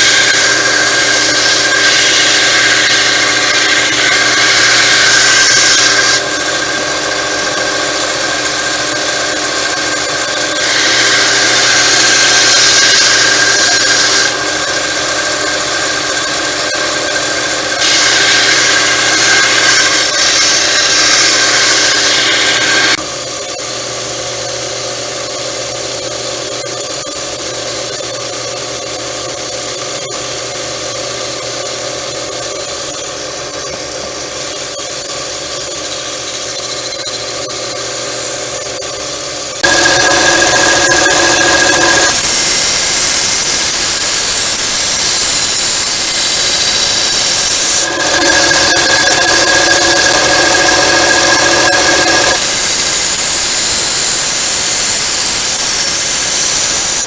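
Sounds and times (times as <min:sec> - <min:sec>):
blade grinding on sanding belt: 0:00.0 - 0:07.0
belt sander running: 0:00.0 - 0:23.0, 0:39.6 - 0:57.0.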